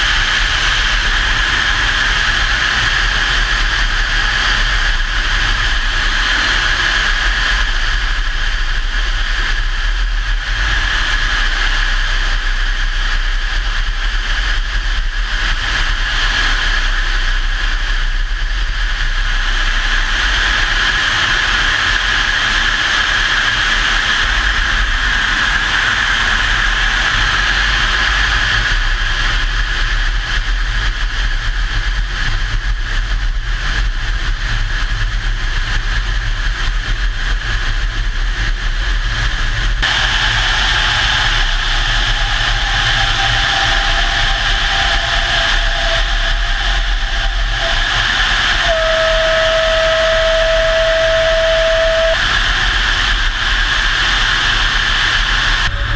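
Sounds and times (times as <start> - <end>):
vehicle engine rumbling: 0.0 - 55.9.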